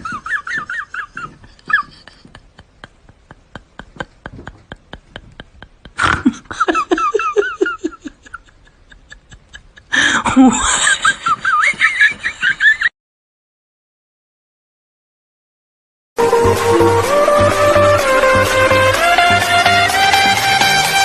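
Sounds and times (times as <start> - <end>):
high-pitched laughter: 0.0 - 12.9
steady ticking beat: 16.2 - 21.0.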